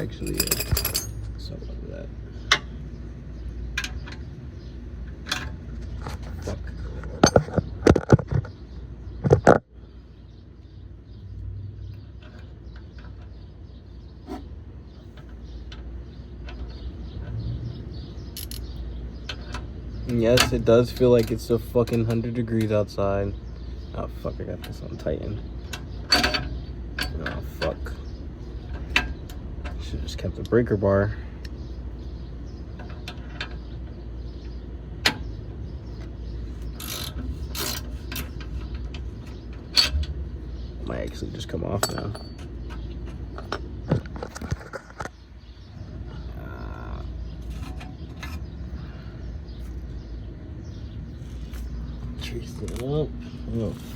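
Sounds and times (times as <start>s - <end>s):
hand tools clinking on metal: 0.0s - 1.3s, 18.4s - 18.7s, 41.1s - 42.8s
low outdoor rumble: 0.0s - 53.9s
ratchet wrench ratcheting: 36.7s - 37.9s.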